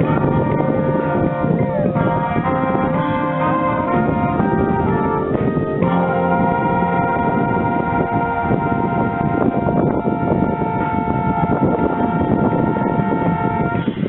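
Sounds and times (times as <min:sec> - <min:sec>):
marching band brass chords: 0:00.0 - 0:14.0
wind buffeting microphone: 0:00.0 - 0:14.0.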